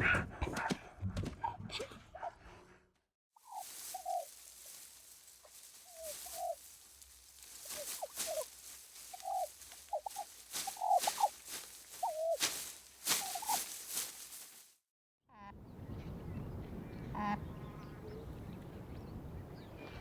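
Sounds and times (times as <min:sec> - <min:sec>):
poultry calling: 0:03.4 - 0:14.6, 0:17.0 - 0:18.4.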